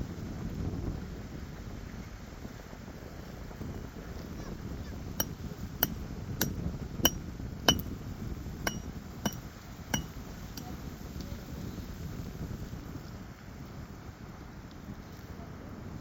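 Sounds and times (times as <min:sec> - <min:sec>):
sharp metallic taps: 0:05.2 - 0:07.9, 0:08.7 - 0:10.7.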